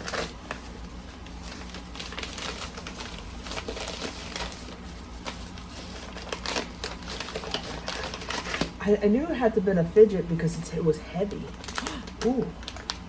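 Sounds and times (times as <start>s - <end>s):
packaging rustling and crinkling: 0.0s - 8.8s, 11.4s - 13.0s.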